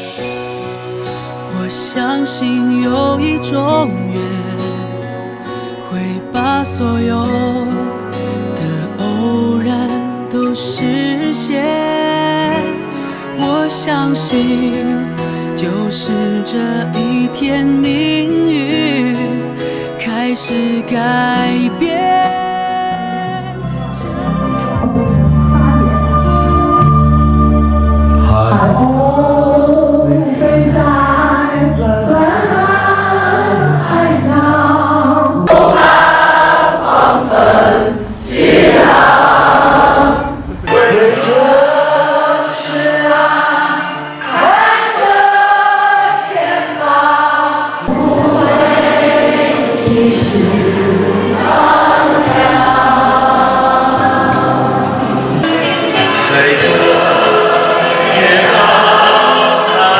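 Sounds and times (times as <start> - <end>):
choir singing: 0.0 - 1.0, 28.3 - 59.9
instrumental backing music: 0.0 - 37.6, 40.6 - 59.9.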